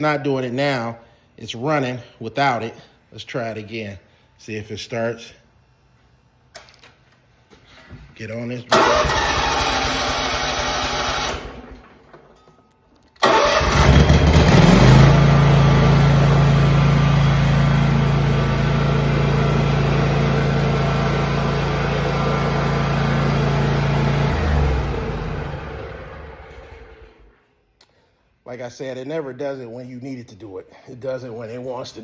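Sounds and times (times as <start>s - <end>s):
lawn mower engine running: 8.7s - 12.0s, 13.2s - 27.4s
mower engine restarting: 8.7s - 12.3s, 13.2s - 27.4s.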